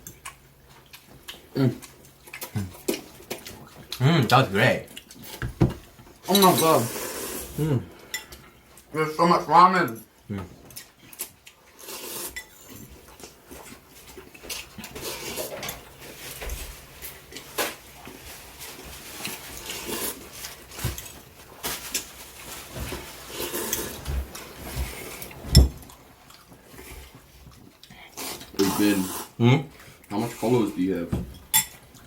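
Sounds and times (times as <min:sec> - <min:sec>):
utensils clinking on bowls: 0:06.2 - 0:07.0, 0:31.4 - 0:31.9.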